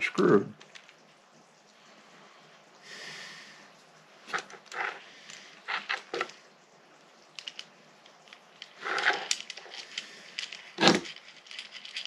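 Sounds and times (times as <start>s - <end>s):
small clicks and scrapes: 0.6s - 1.2s, 4.2s - 6.4s, 7.2s - 12.0s.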